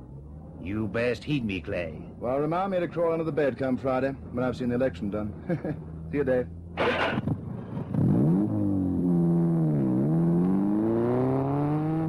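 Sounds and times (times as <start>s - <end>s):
car engine accelerating: 6.8s - 12.0s.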